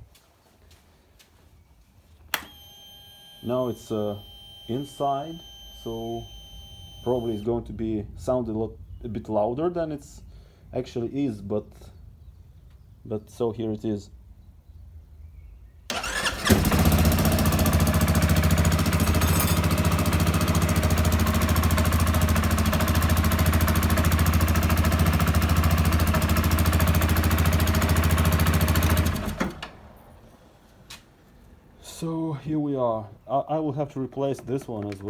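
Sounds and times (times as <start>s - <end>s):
atv engine starting and idling: 2.4s - 7.6s, 15.9s - 30.6s.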